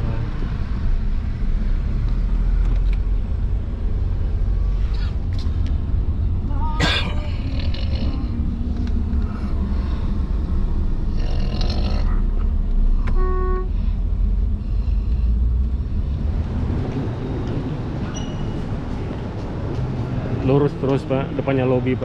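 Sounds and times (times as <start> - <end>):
car road and engine rumble: 0.0 - 22.0
car horn toot: 13.1 - 13.8.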